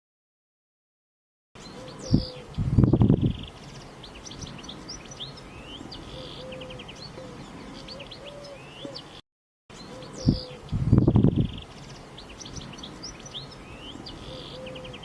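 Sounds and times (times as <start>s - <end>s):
low drawn-out bird calls: 1.6s - 15.0s
small birds chirping: 1.6s - 15.0s.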